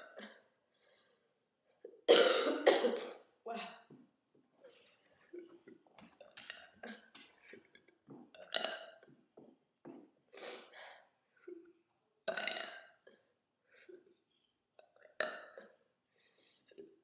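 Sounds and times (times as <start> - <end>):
woman burping: 2.1 - 3.9, 5.4 - 9.1, 12.3 - 13.2.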